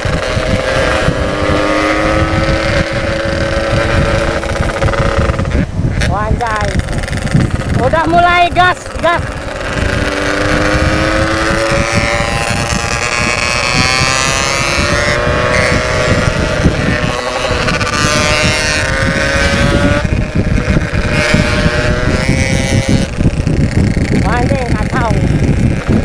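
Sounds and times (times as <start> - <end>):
two-stroke motorcycle engine revving: 0.0 - 26.0
wind rumbling on microphone: 0.0 - 26.0.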